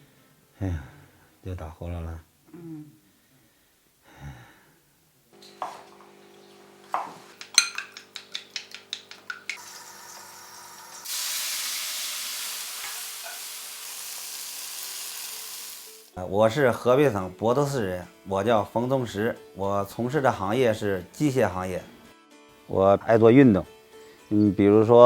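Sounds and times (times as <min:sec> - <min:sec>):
loud sizzling hiss: 0:09.6 - 0:16.2.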